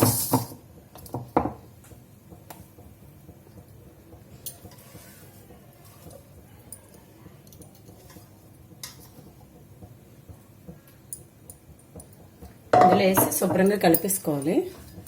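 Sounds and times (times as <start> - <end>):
kitchen vessels knocking: 12.0 - 15.0.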